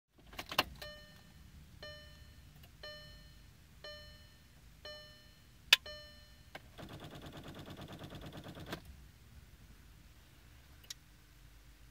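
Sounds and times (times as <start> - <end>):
dashboard warning chime: 0.7 - 6.6.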